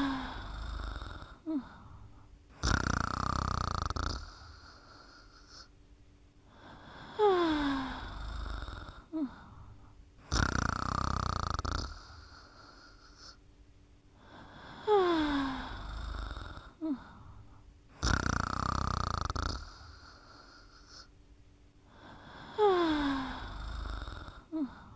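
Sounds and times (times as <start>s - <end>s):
person snoring with wheeze: 0.0s - 5.7s, 6.5s - 13.4s, 14.2s - 21.1s, 21.9s - 24.9s.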